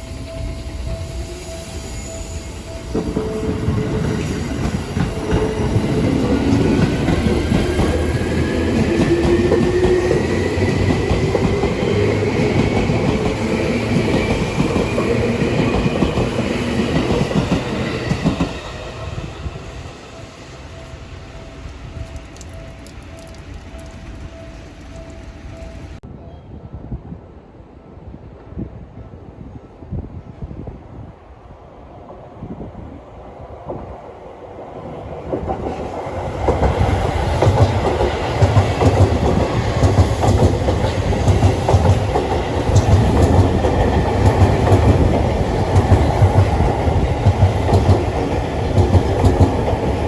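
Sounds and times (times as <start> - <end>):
train wheels clattering: 0.0 - 20.0, 35.3 - 50.0
level-crossing warning bell ringing: 0.0 - 26.0.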